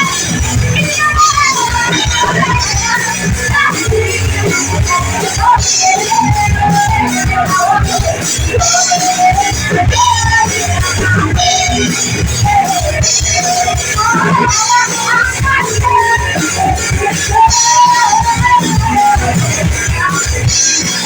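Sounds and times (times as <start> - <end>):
bass guitar: 0.0 - 21.0
drums with cymbals: 0.0 - 21.0
electric guitar: 0.0 - 21.0
person singing: 0.0 - 21.0.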